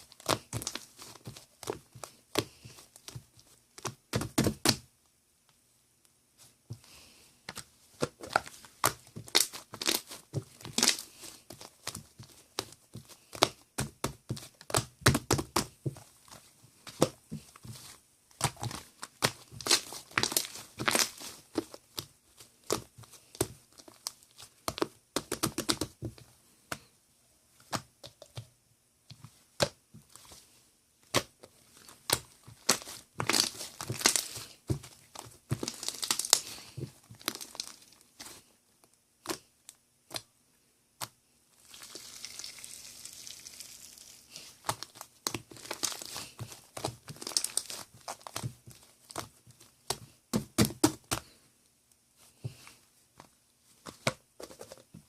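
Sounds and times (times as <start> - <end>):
material crinkling and tearing: 8.2 - 12.7, 17.4 - 21.8, 31.2 - 38.4, 41.6 - 49.7.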